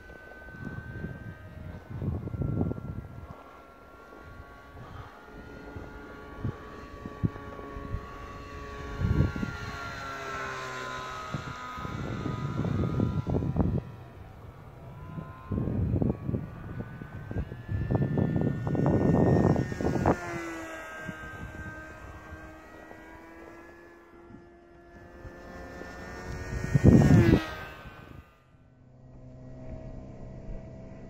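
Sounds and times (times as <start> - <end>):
wind buffeting microphone: 0.0 - 28.4
model airplane motor whining: 0.0 - 31.0.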